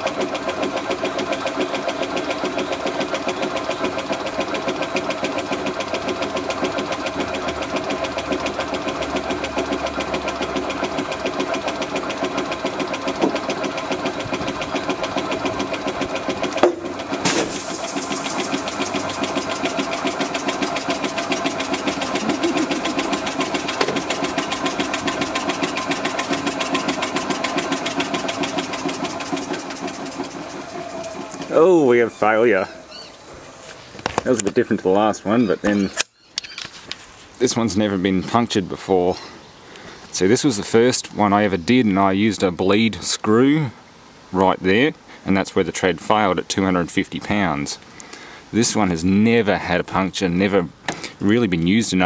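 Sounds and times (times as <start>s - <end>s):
water pump pulsing: 0.0s - 32.9s.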